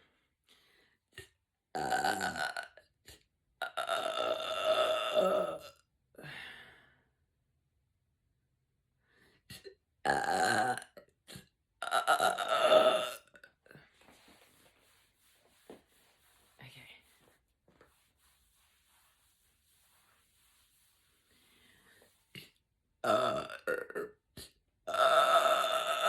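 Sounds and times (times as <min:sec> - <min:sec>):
woman belching loudly: 0:01.8 - 0:02.7, 0:03.6 - 0:05.7, 0:11.8 - 0:13.4, 0:24.9 - 0:26.0.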